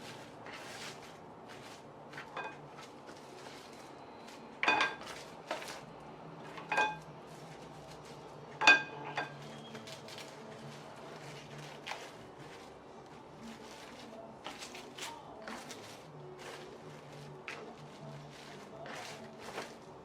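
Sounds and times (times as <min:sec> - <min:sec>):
utensil clinking against a dish: 0:01.6 - 0:03.7, 0:04.6 - 0:05.8, 0:06.4 - 0:07.1, 0:08.0 - 0:20.0.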